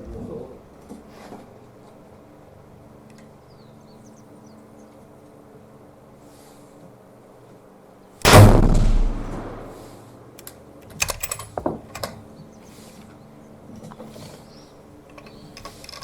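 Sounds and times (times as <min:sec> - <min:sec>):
rifle shot echoing: 0:08.2 - 0:10.0
rifle bolt metallic clicks: 0:10.4 - 0:12.1.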